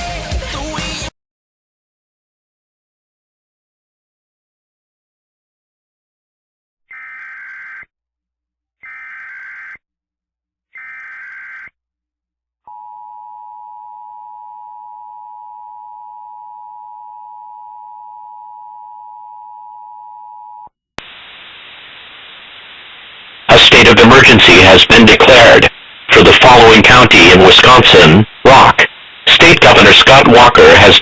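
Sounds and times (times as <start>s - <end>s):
static hiss: 6.9s - 7.8s, 10.8s - 11.7s, 21.0s - 31.0s
two-tone attention signal: 6.9s - 7.8s, 8.8s - 9.8s, 10.8s - 11.7s
data header bursts: 6.9s - 7.9s, 8.8s - 9.8s, 10.8s - 11.7s, 23.5s - 31.0s.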